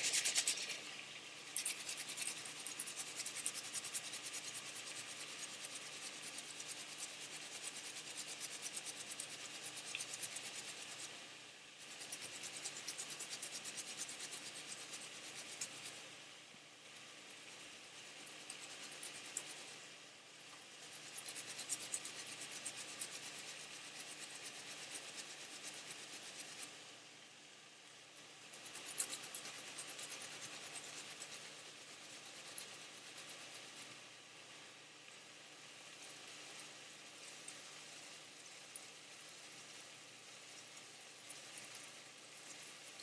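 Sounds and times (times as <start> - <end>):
food grated on hand grater: 0.0 - 11.2, 11.8 - 16.0, 17.1 - 19.8, 20.8 - 26.7, 28.4 - 33.9.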